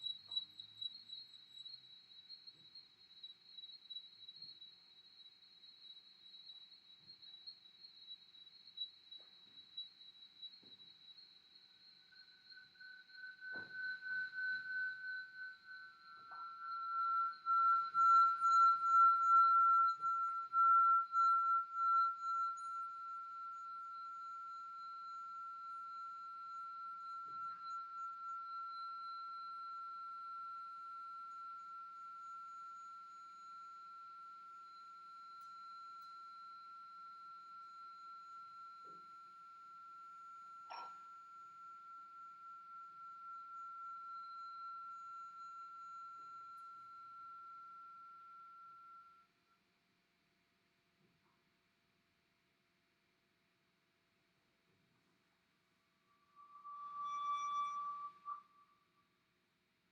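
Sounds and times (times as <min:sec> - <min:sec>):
high ringing tone: 0:11.8 - 0:49.4, 0:56.0 - 0:58.9.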